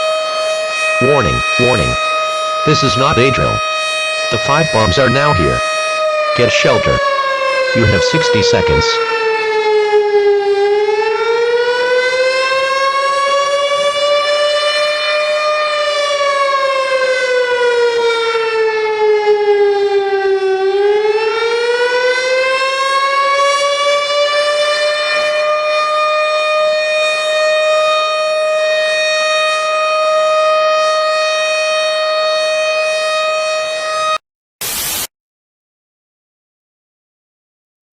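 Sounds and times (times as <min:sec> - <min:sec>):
civil defense siren wailing: 0:00.0 - 0:34.2
short burst of noise: 0:34.6 - 0:35.1.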